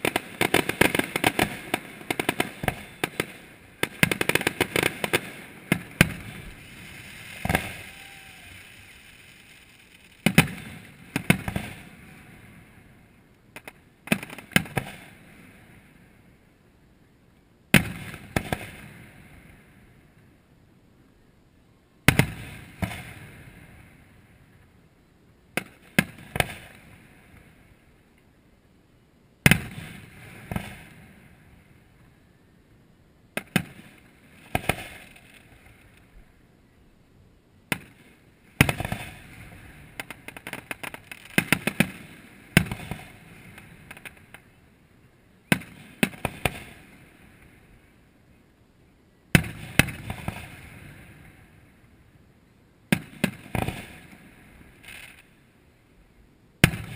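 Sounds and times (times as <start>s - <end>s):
crackling firework pops: 0.0s - 12.8s, 13.4s - 15.8s, 17.7s - 19.6s, 22.0s - 24.0s, 25.5s - 28.3s, 29.4s - 31.4s, 33.3s - 36.1s, 37.7s - 44.6s, 45.4s - 47.6s, 49.3s - 51.5s, 52.9s - 55.4s, 56.6s - 56.9s
fireworks bangs: 0.0s - 12.9s, 37.7s - 44.5s, 45.4s - 47.0s, 49.3s - 51.4s, 52.9s - 55.2s, 56.6s - 56.9s.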